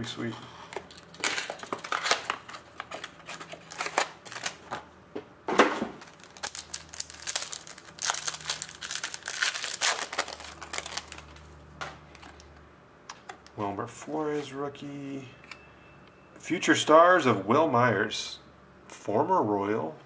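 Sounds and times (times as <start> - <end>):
wrapper crinkling and tearing: 0.7 - 4.7, 6.0 - 12.5.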